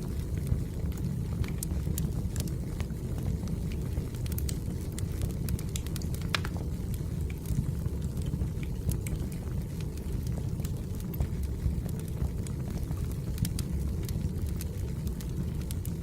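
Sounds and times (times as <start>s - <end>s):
fire crackles and pops: 0.0s - 16.0s
fire rumbling: 0.0s - 16.0s.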